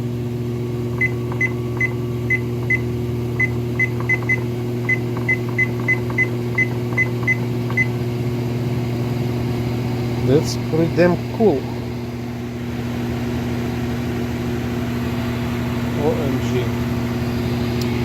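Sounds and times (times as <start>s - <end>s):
treadmill motor humming: 0.0s - 8.2s.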